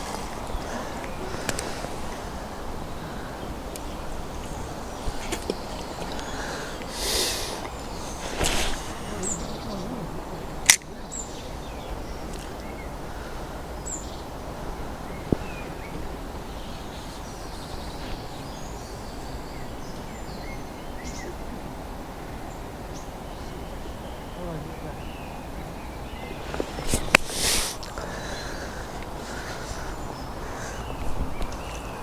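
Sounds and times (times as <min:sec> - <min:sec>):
small birds chirping: 0:00.0 - 0:32.0
sharp click: 0:10.6 - 0:10.9.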